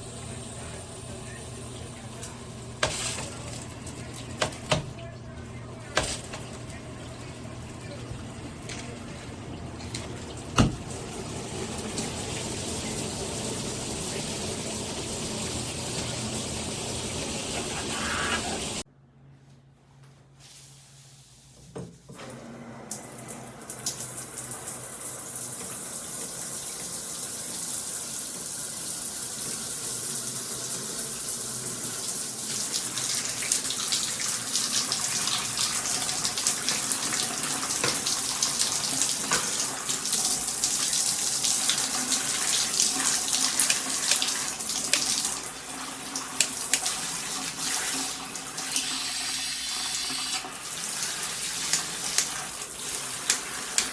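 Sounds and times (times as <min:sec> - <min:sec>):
shower water spraying: 0:00.0 - 0:04.8, 0:09.9 - 0:18.8, 0:27.9 - 0:53.9.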